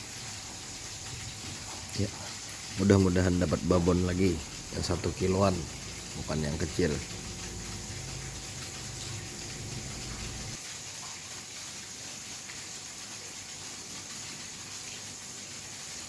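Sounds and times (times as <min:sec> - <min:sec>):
running water: 0:00.0 - 0:16.0
low hum: 0:02.9 - 0:10.6.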